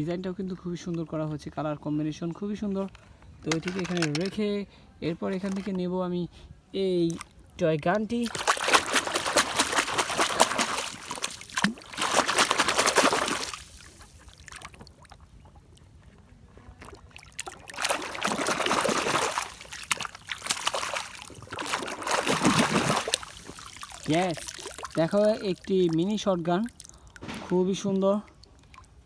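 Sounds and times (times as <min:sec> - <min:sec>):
water splashing and trickling: 0:07.0 - 0:29.0.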